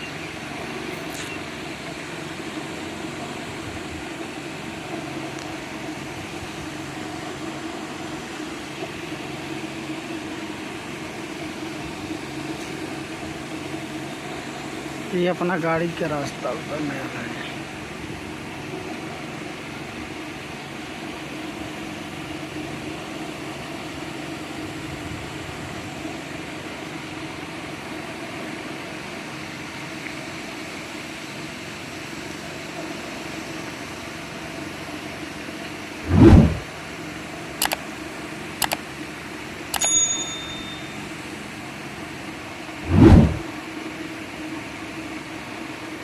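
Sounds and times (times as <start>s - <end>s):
engine humming: 35.6s - 36.8s, 38.6s - 43.8s
loud low thump: 36.1s - 36.6s
sharp clicks: 37.6s - 37.8s, 38.6s - 38.8s
high metallic ring: 39.8s - 41.3s.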